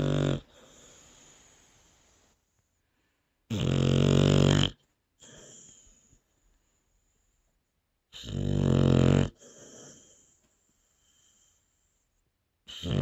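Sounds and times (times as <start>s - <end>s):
pet snoring: 0.0s - 1.0s, 3.5s - 5.8s, 8.1s - 10.4s, 12.7s - 13.0s
soft breath out: 0.5s - 3.4s.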